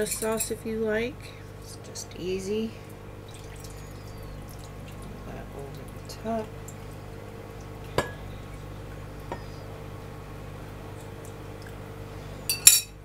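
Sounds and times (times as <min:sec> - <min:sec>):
sauce pouring wet sound: 0:02.9 - 0:05.1.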